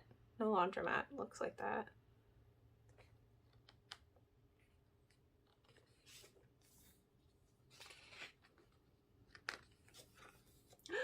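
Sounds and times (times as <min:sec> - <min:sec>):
pages turning: 0:05.0 - 0:10.8.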